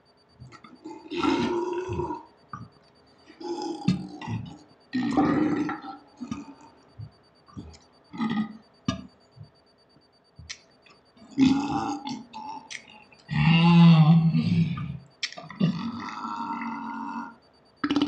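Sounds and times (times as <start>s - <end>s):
men belching: 0.6s - 2.3s, 3.4s - 6.6s, 8.2s - 8.6s, 11.3s - 18.0s.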